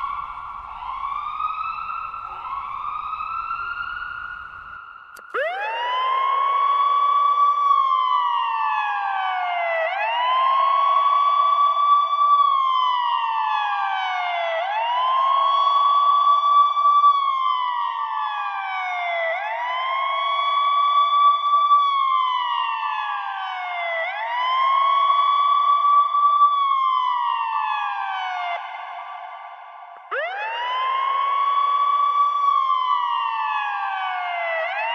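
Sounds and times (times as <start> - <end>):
electronic siren wailing: 0.8 - 6.6.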